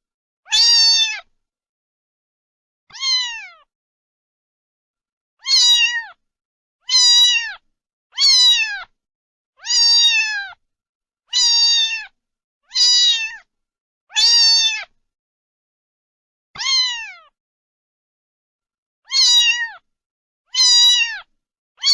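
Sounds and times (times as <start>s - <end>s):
cat meowing: 0.5s - 1.3s, 2.9s - 3.7s, 5.4s - 6.2s, 6.9s - 7.6s, 8.2s - 8.9s, 9.6s - 10.6s, 11.3s - 13.5s, 14.1s - 14.9s, 16.6s - 17.4s, 19.1s - 19.8s, 20.5s - 21.9s.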